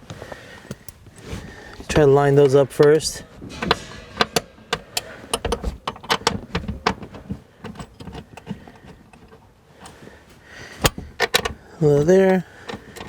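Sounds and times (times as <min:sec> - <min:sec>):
metallic bolt clicks and clinks: 0:02.3 - 0:10.0, 0:10.8 - 0:13.0.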